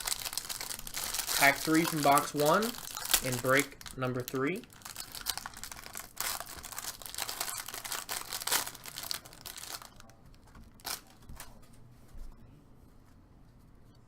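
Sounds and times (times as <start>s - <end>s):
wrapper tearing and crinkling: 0.0s - 11.2s.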